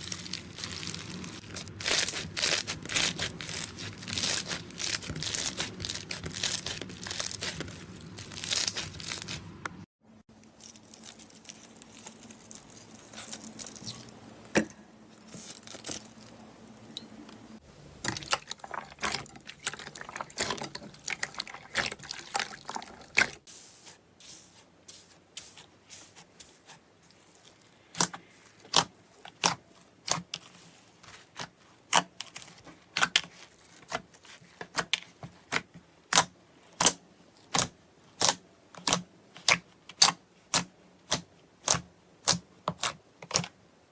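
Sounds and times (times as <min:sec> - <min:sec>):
slime crackling: 0:00.0 - 0:09.8, 0:10.5 - 0:14.2, 0:15.2 - 0:16.5, 0:18.0 - 0:23.5.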